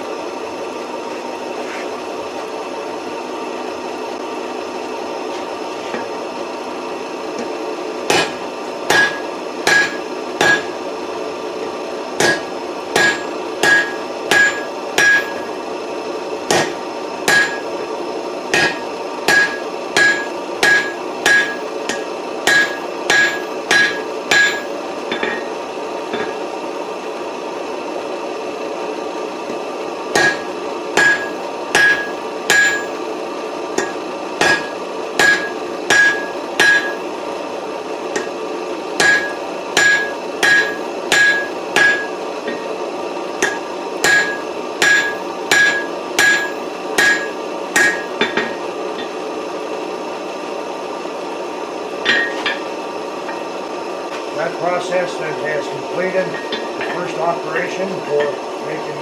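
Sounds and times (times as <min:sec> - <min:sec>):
steady hum: 0:00.0 - 0:59.0
hammer striking steel on anvil: 0:07.4 - 0:10.8, 0:12.2 - 0:15.5, 0:16.5 - 0:17.7, 0:18.5 - 0:26.4, 0:29.5 - 0:33.0, 0:33.8 - 0:37.0, 0:38.1 - 0:38.4, 0:39.0 - 0:42.7, 0:43.4 - 0:49.2, 0:52.0 - 0:52.7, 0:56.3 - 0:57.2.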